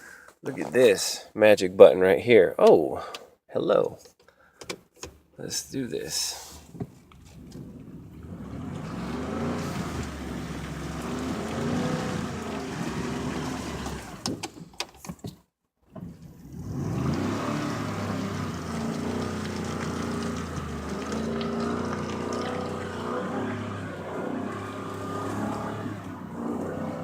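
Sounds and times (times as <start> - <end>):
vehicle engine running hard: 8.2 - 14.2, 16.6 - 27.0.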